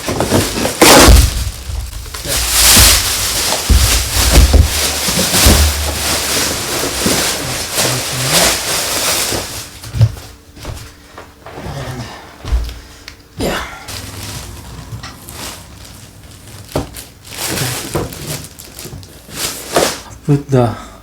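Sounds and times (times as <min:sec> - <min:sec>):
packaging rustling: 0:00.0 - 0:10.4, 0:13.9 - 0:20.1
low bumps and rumbles: 0:01.1 - 0:06.8.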